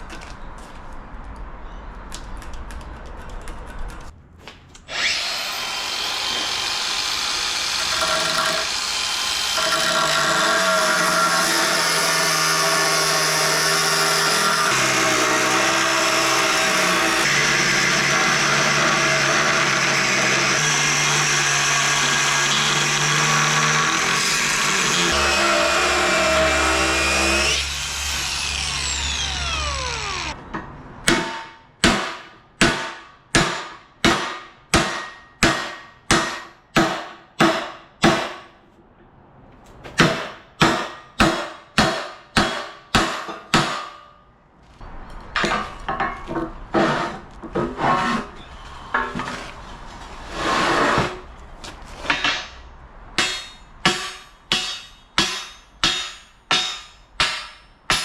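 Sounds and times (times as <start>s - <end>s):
power tool spinning down: 23.9s - 30.4s
hammer striking steel: 30.6s - 38.6s, 40.0s - 44.2s, 53.2s - 58.0s.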